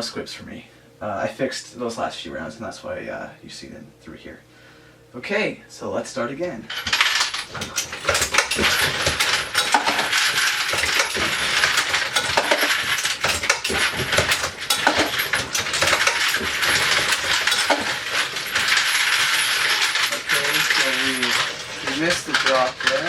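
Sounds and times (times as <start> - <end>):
reloading press knocks: 6.7 - 20.3
brass cases clinking against metal: 6.7 - 23.0.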